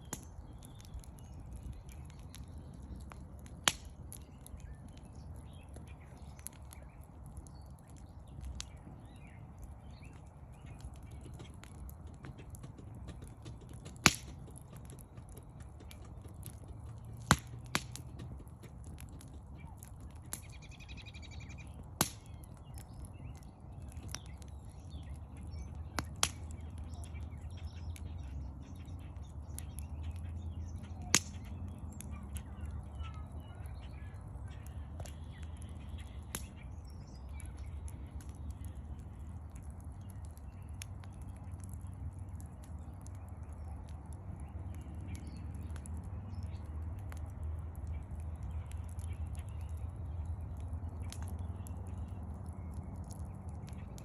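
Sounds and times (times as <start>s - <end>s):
wood fire crackling and popping: 0.0s - 54.0s
faint bird chirps: 26.6s - 39.3s.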